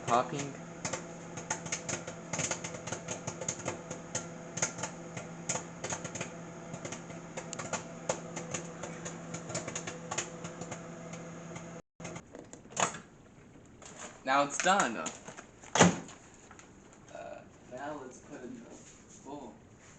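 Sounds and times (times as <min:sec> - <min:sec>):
popcorn popping: 0:00.0 - 0:17.1
microwave oven humming: 0:00.0 - 0:19.9.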